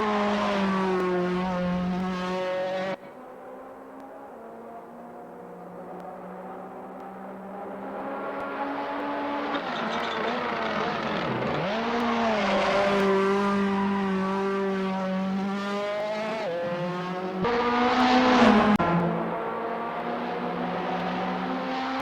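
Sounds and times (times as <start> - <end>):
racing car engine revving: 4.6 - 22.0.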